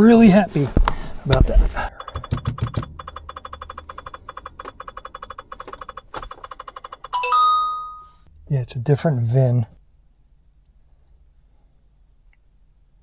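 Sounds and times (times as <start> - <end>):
rapid electronic chime ticking: 1.8 - 7.3
ringing ding: 1.9 - 8.2.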